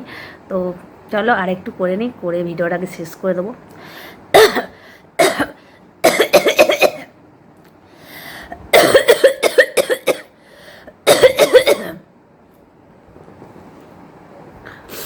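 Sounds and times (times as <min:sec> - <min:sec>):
woman coughing: 0:04.3 - 0:07.2, 0:08.7 - 0:10.3, 0:11.0 - 0:12.0.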